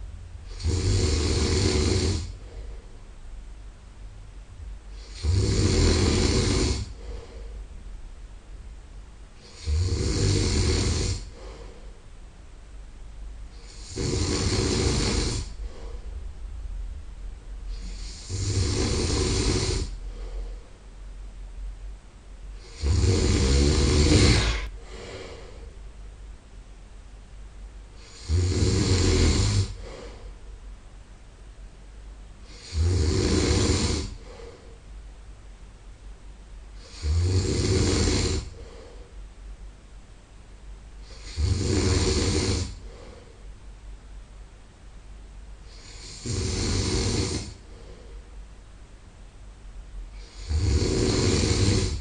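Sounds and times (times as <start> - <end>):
quiet breathing: 0.0 - 8.4, 9.2 - 27.1, 27.7 - 35.8, 36.5 - 44.3, 45.5 - 48.7, 49.9 - 52.0
man snoring: 0.4 - 2.6, 4.9 - 7.3, 9.4 - 11.6, 13.5 - 16.0, 17.7 - 20.0, 22.6 - 25.4, 28.0 - 30.2, 32.4 - 34.6, 36.8 - 38.9, 41.0 - 43.2, 45.7 - 48.0, 50.1 - 52.0.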